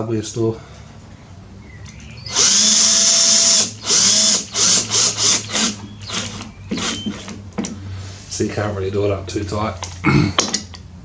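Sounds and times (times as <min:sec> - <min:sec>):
electric drill driving bolt: 0:01.8 - 0:07.8.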